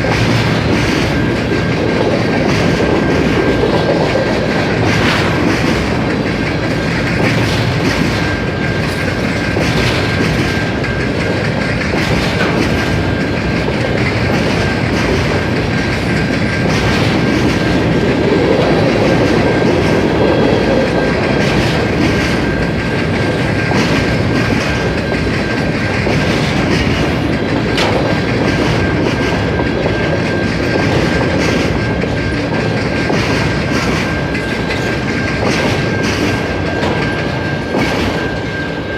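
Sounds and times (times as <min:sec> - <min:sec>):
railcars rumbling: 0:00.0 - 0:38.9
wheels clacking over rail joints: 0:00.0 - 0:38.9.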